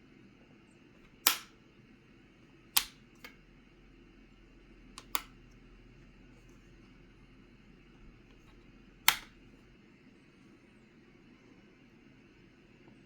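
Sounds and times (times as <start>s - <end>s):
mechanical keyboard clicks: 1.0s - 1.5s, 2.8s - 3.4s, 5.0s - 5.4s, 8.3s - 9.4s.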